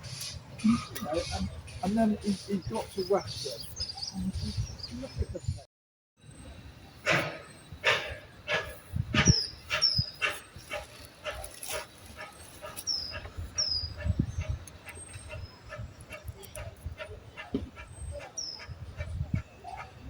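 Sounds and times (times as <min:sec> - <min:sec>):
dog barking rapidly: 0:07.8 - 0:19.1.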